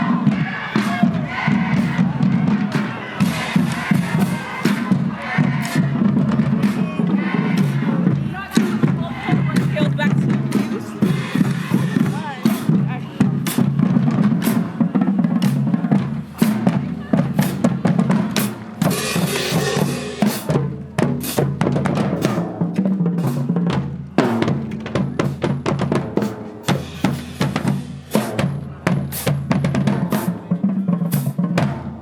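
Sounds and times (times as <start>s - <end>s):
snare drum roll: 0.0s - 23.6s
drumline playing: 0.0s - 32.0s.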